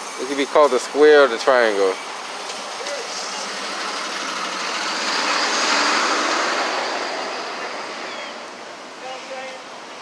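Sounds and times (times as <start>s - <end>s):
vehicle passing by: 1.4s - 9.3s.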